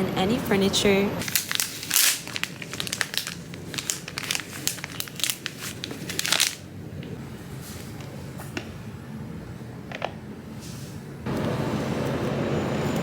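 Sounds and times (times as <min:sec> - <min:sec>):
material crinkling and rustling: 0:01.2 - 0:06.6.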